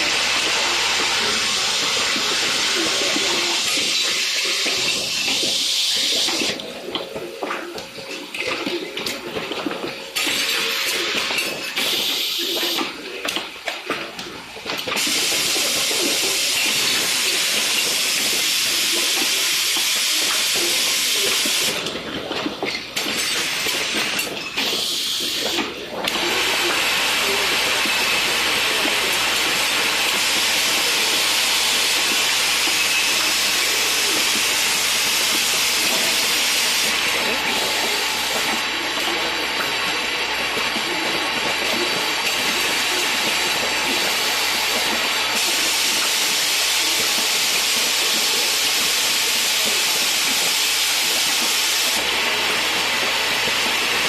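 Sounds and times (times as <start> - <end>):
loud steady hiss: 26.2 - 39.5, 40.3 - 54.0.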